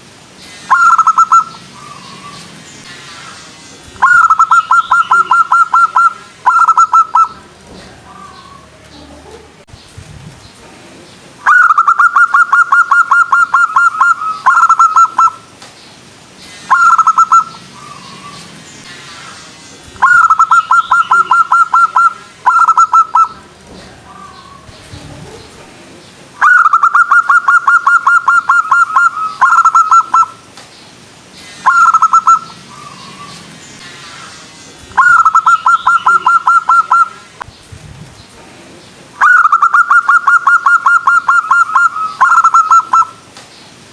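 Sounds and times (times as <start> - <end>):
dove cooing: 0.7 - 2.3, 4.0 - 7.4, 11.5 - 15.4, 20.0 - 23.4, 35.0 - 37.2, 39.2 - 43.1.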